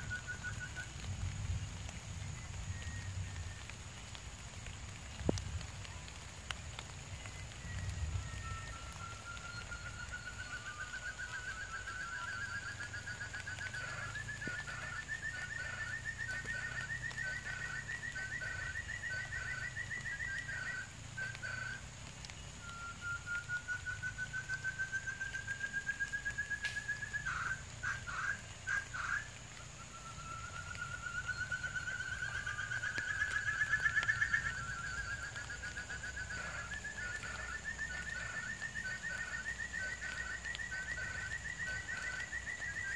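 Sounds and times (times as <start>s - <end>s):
quail trilling: 11.2s - 21.8s, 26.6s - 29.3s, 30.5s - 42.9s.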